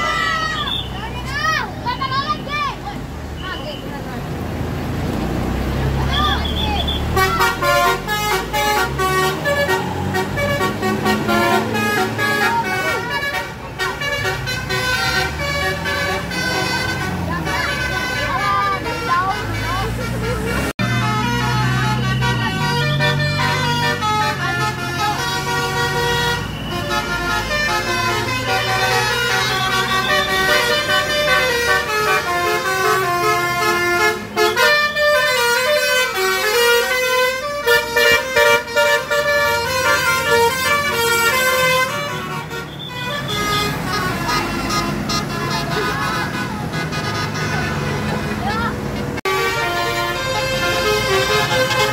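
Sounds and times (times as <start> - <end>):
bus engine running: 0.0 - 51.9
multi-tone bus horn melody: 5.8 - 51.9.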